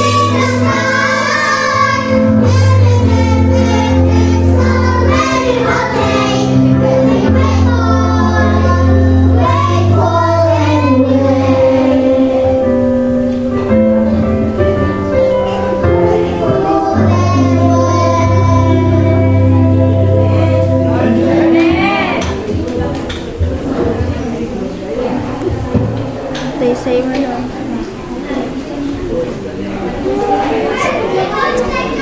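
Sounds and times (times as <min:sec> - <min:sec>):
children singing: 0:00.0 - 0:22.7
instrumental backing track: 0:00.0 - 0:24.5.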